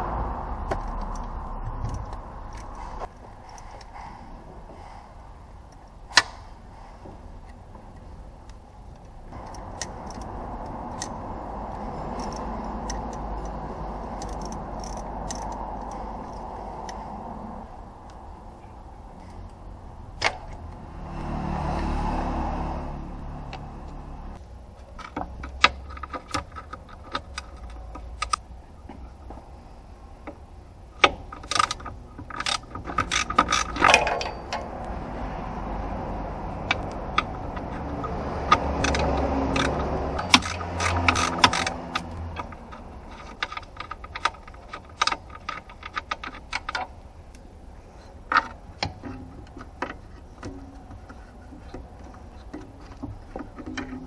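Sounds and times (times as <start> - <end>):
ratcheting clicks: 0.7 - 3.9, 7.5 - 17.0, 31.0 - 35.0, 36.5 - 47.4
metallic clinks and clanks: 9.0 - 17.0, 31.0 - 35.2, 36.5 - 47.0.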